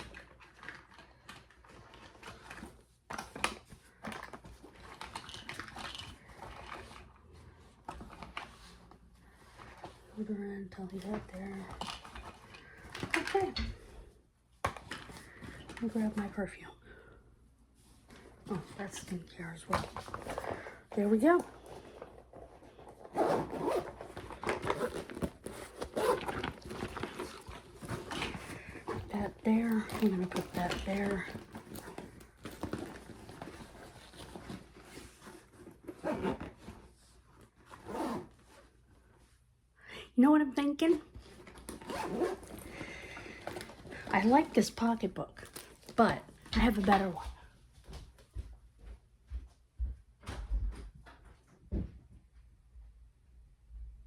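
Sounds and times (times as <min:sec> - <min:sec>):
bag zipper rasping: 0:23.0 - 0:34.6, 0:35.9 - 0:36.7, 0:37.7 - 0:38.4, 0:41.6 - 0:44.2.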